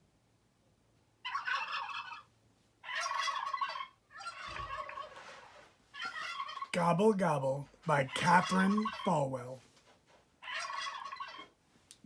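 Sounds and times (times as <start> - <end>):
turkey gobbling: 1.3 - 2.2, 2.9 - 5.1.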